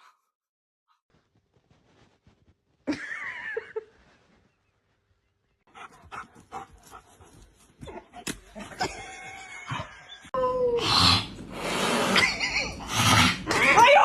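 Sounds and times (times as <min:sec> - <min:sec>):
rustling: 0:01.1 - 0:05.6.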